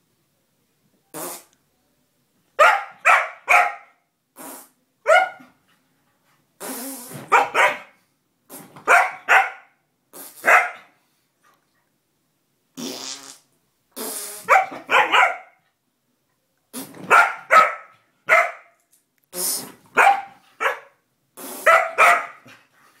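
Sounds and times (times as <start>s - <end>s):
fart sounds: 1.1s - 1.6s, 4.4s - 4.8s, 6.6s - 7.3s, 8.5s - 8.8s, 10.1s - 10.5s, 12.8s - 14.6s, 16.7s - 17.1s, 19.3s - 19.9s, 21.4s - 21.8s
dog barking: 2.6s - 4.0s, 5.0s - 5.5s, 7.3s - 8.0s, 8.8s - 9.8s, 10.4s - 10.9s, 14.5s - 15.6s, 17.1s - 18.8s, 20.0s - 21.0s, 21.6s - 22.5s.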